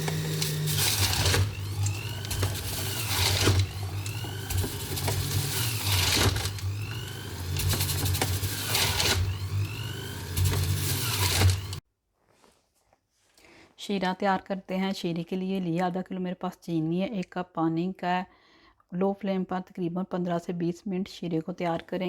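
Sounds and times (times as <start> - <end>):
electric juicer motor humming: 0.0 - 11.8
juicer knocks and rattles: 0.0 - 11.8.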